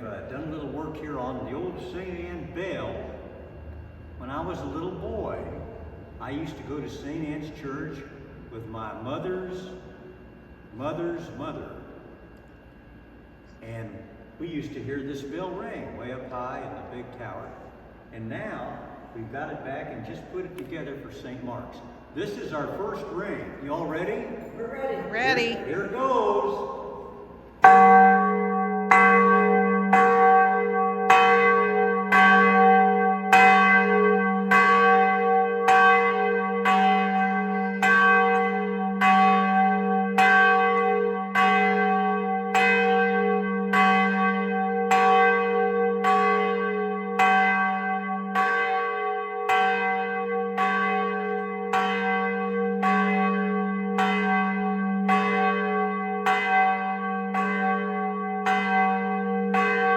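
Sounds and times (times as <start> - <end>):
low hum: 0.4 - 41.4
church bell ringing: 25.4 - 59.9.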